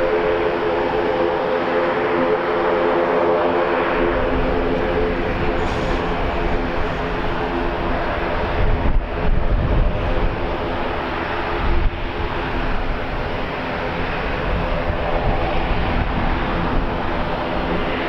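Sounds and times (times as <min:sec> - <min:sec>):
aircraft engines droning: 0:00.0 - 0:18.0
wind buffeting microphone: 0:00.0 - 0:18.0.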